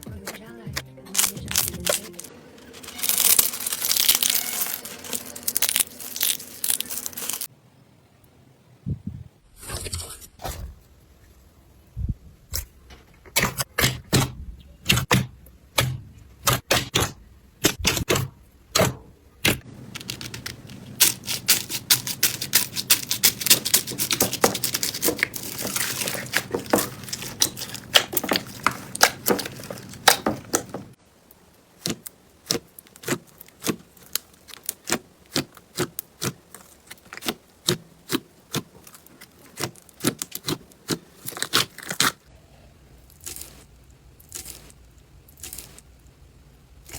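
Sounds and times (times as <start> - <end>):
slime crackling and popping: 1.1 - 7.5, 19.9 - 42.2, 43.0 - 46.2.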